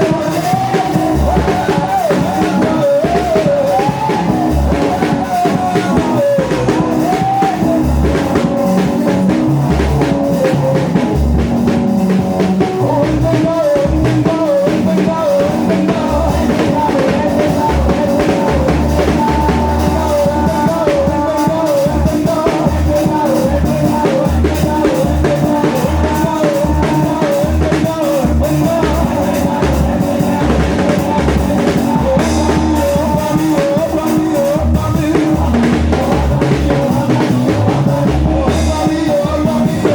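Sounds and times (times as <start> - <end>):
bass drum beating: 0.0 - 39.9
gospel worship music: 0.0 - 39.9
lead voice singing: 0.0 - 39.9.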